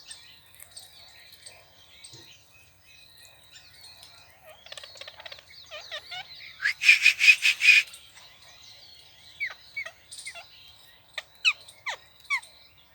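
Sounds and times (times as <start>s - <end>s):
parrot calls sliding down: 6.6s - 7.9s
parrots chattering: 6.6s - 7.9s
parrots screeching harshly: 6.6s - 7.9s.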